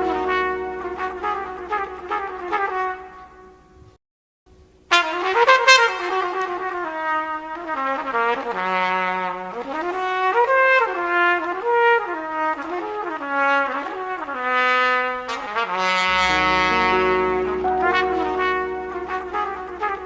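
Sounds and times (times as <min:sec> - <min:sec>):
low held notes: 0:00.0 - 0:02.5, 0:16.1 - 0:20.0
trumpet playing lively melody: 0:00.0 - 0:03.0, 0:15.3 - 0:20.0.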